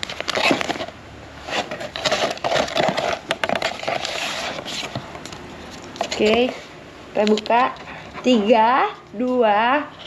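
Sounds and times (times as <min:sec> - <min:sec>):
packaging crinkling and rustling: 0:00.0 - 0:06.7.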